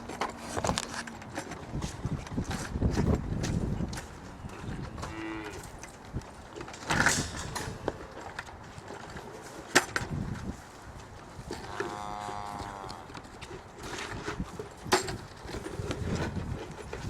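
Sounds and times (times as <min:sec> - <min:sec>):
cow mooing: 0:04.1 - 0:05.7, 0:11.6 - 0:13.2.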